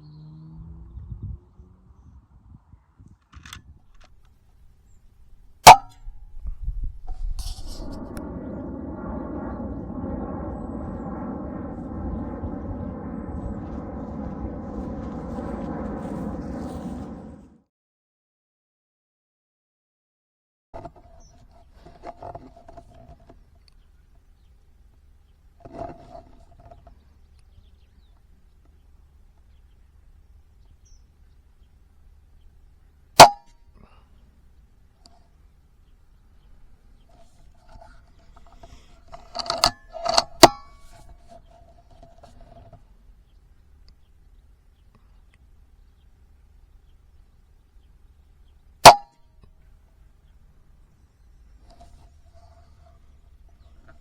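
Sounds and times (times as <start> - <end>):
air rifle shot: 5.6 - 5.9, 48.8 - 49.0
mechanical drone: 7.4 - 17.6.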